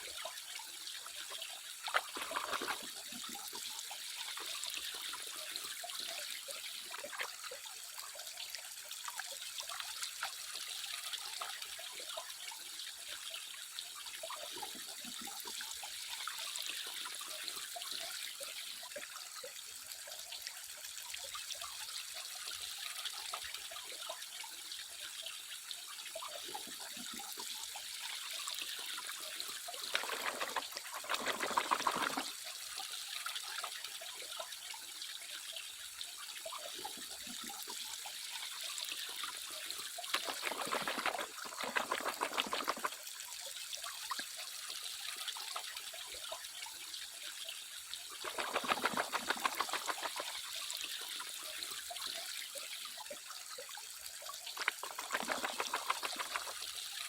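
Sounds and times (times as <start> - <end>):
water running and trickling: 0.0 - 57.0
water splashing: 1.3 - 5.6, 6.8 - 7.6, 28.7 - 32.5, 39.4 - 43.2, 48.1 - 51.3, 54.4 - 57.0.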